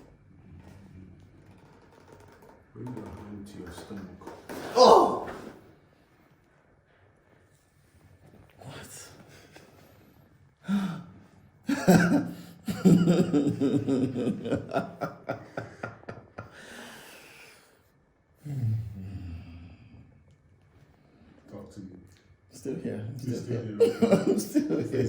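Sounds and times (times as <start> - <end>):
person gasping: 10.6 - 11.1.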